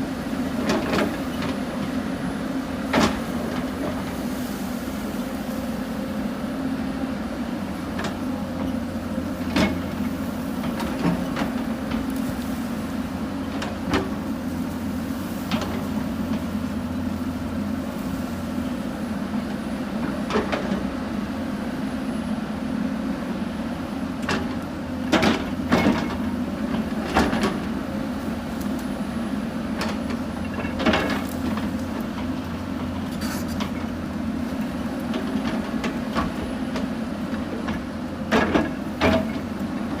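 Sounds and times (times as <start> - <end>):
excavator diesel engine running: 0.0 - 40.0
excavator bucket clanking: 35.1 - 40.0.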